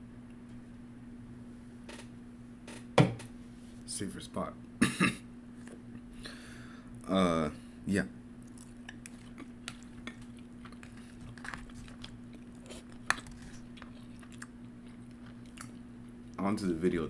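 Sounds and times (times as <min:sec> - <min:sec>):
steady low hum: 0:00.0 - 0:17.0
person chewing food: 0:08.4 - 0:16.4.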